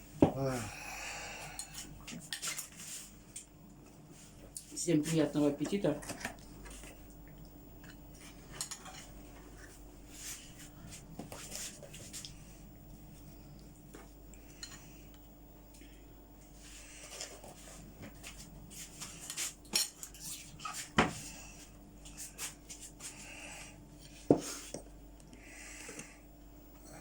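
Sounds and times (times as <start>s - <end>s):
cutlery clinking on plates: 8.5s - 9.1s.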